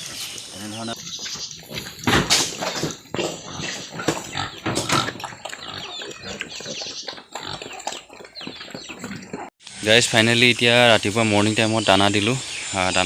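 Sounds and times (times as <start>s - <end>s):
pigs grunting and snuffling: 0.0s - 9.5s.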